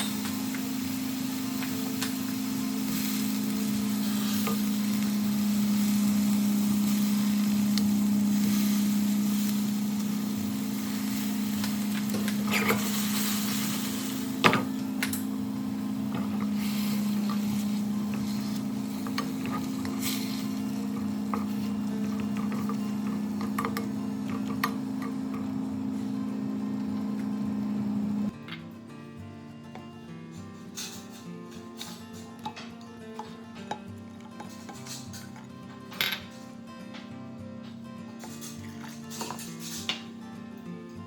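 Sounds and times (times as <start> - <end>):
food sizzling in a pan: 0.0 - 28.4, 29.8 - 40.4
steady low hum: 0.0 - 28.4
utensil clicking against pan: 16.1 - 25.6, 30.8 - 35.8.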